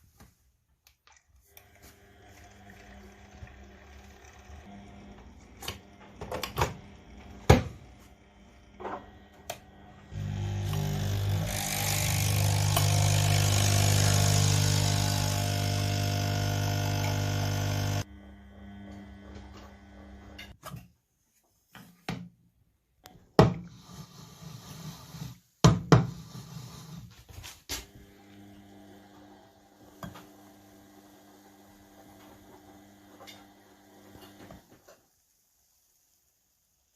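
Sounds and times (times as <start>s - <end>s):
coffee machine pump buzzing: 1.5s - 20.5s, 28.0s - 34.7s.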